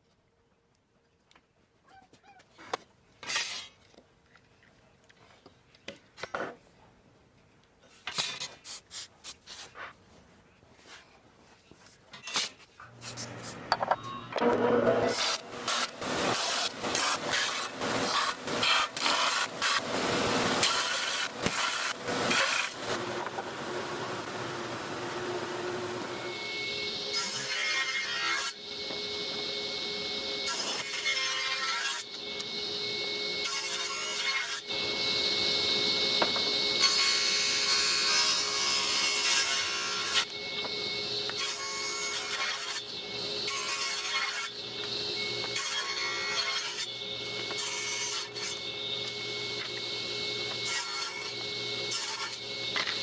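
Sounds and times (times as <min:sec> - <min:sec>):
bandsaw cutting wood: 0:14.4 - 0:53.0.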